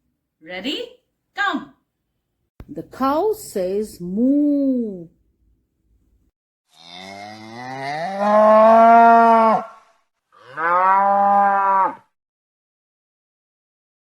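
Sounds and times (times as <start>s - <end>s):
cow mooing: 6.7s - 12.1s.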